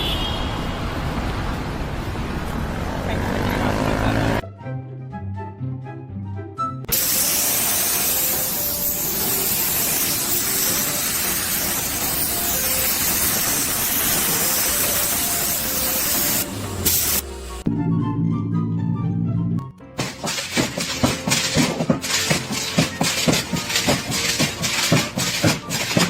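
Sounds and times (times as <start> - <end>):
loud hissing spray: 6.9 - 17.4, 20.0 - 26.0.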